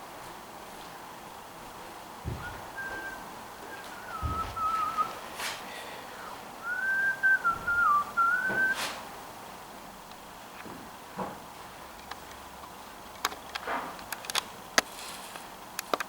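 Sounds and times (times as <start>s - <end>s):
person whistling a tune: 2.3s - 5.6s, 6.2s - 9.0s.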